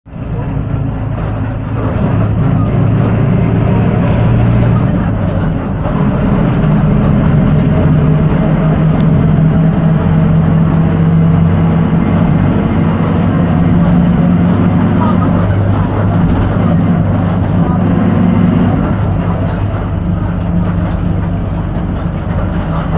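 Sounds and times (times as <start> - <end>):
bus diesel engine running: 0.0 - 22.9.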